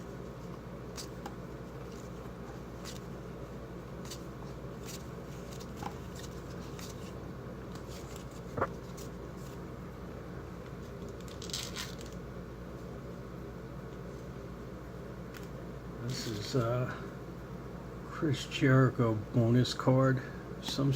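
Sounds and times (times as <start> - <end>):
steady low hum: 0.0 - 20.9
cards rustling and clicking: 0.4 - 3.1, 4.0 - 9.6, 10.9 - 12.2.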